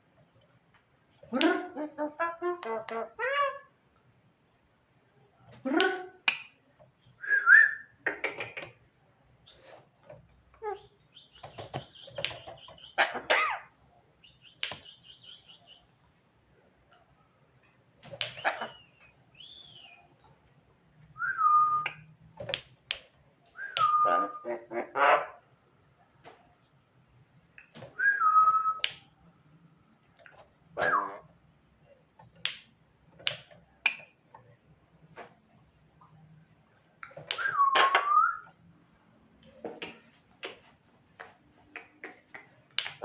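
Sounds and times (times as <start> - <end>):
sharp bird clicks: 8.0 - 8.8, 11.1 - 13.0, 14.3 - 15.8, 18.0 - 19.5, 37.0 - 38.6
bird sharp clicks: 14.4 - 15.2.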